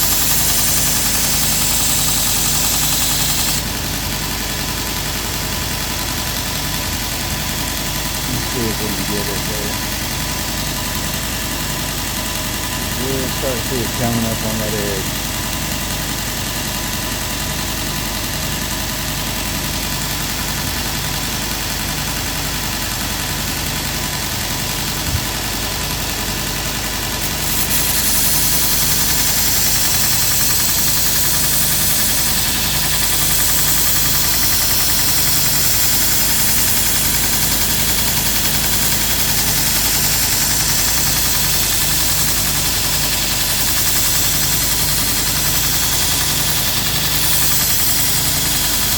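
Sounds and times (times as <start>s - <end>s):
belt grinder grinding steel: 0.0s - 3.8s, 26.7s - 48.9s.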